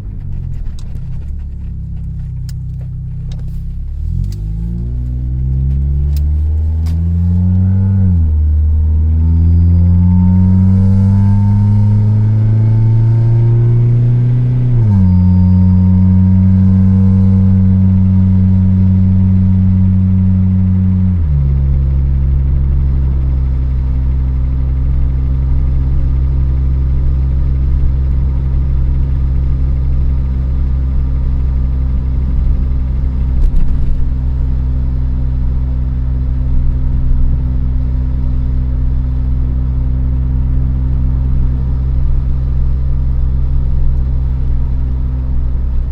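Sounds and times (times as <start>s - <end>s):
engine tapping and ticking: 0.0s - 7.1s, 21.6s - 45.9s
car engine idling: 0.0s - 45.9s.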